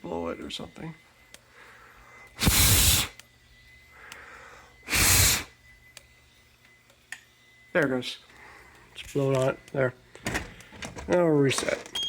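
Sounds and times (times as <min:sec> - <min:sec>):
hard breaths blown: 0:01.4 - 0:03.2, 0:03.8 - 0:05.5.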